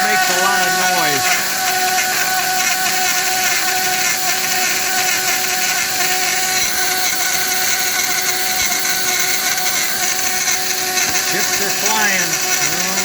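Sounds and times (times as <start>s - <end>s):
rotary tool cutting metal: 0.0s - 13.0s.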